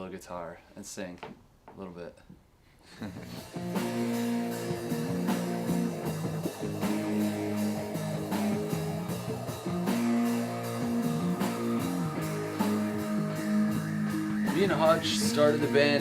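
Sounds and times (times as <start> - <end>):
electric guitar chords: 3.2 - 16.0
drum hits: 3.4 - 16.0.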